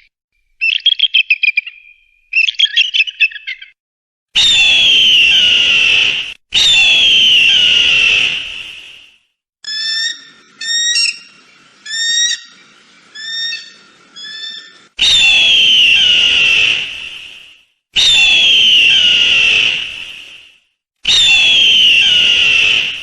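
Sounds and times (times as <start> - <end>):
eagle chirping calls: 9.6 - 15.4
eagle screeching calls: 9.6 - 16.8.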